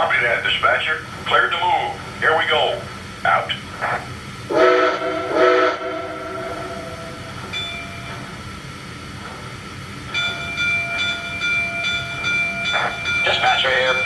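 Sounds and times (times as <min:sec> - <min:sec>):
model locomotive running sound: 0:00.0 - 0:08.2, 0:10.1 - 0:14.0
locomotive whistle blast: 0:04.5 - 0:07.3
high ringing tone: 0:07.1 - 0:08.1.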